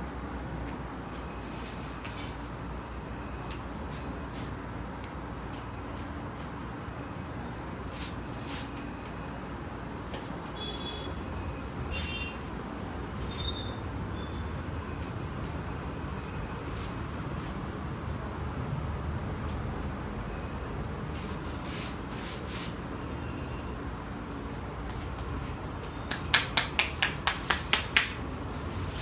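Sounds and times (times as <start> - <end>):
sharp taps: 24.9 - 28.4.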